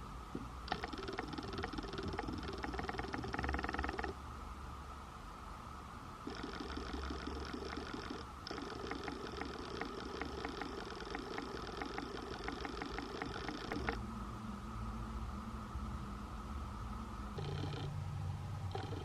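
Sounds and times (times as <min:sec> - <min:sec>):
sewing machine stitching clatter: 0:00.7 - 0:04.1.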